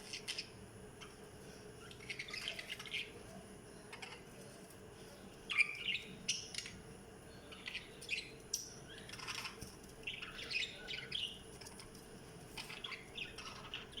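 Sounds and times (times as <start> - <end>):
budgerigars chirping and squawking: 0.0 - 1.2, 1.8 - 3.2, 3.9 - 4.3, 5.5 - 6.8, 7.4 - 11.9, 12.5 - 14.0.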